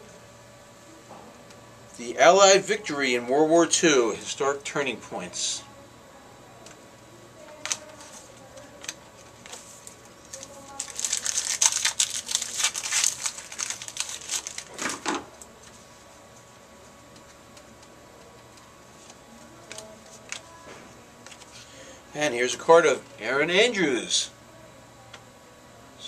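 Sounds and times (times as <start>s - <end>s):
foil wrapper crinkling: 7.5s - 15.0s.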